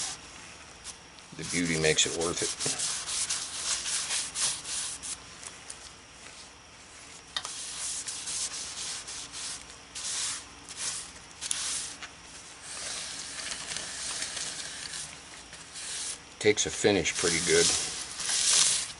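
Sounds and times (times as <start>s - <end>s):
tool rubbing spinning wood bowl: 1.3s - 5.2s, 7.5s - 16.2s, 16.8s - 18.9s.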